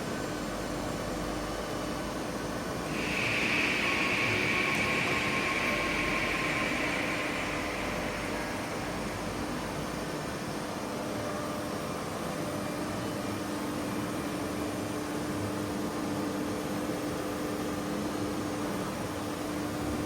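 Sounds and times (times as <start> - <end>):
milling machine humming: 2.8 - 11.3
background hiss: 2.9 - 10.1.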